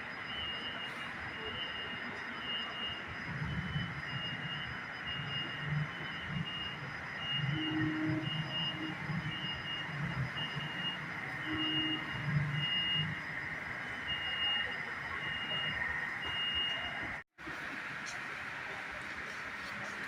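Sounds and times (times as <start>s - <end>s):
low background murmur: 14.0s - 20.0s.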